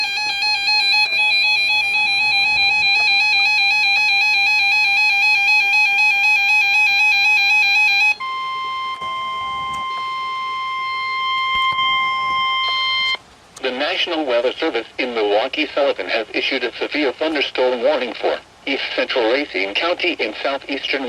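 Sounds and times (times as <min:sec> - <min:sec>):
steady single-pitch alarm tone: 0:00.0 - 0:13.2
two-pitch electronic alert beeping: 0:08.0 - 0:13.2.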